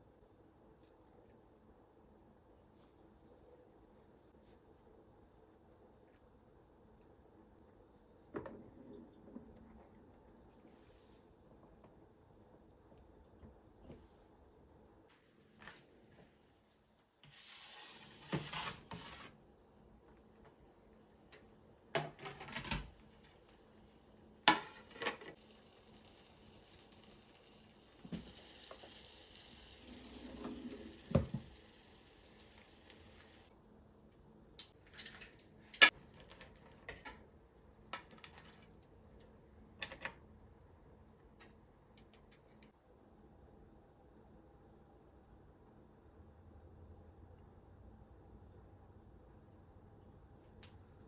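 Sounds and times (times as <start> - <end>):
steady hiss: 13.9 - 33.6.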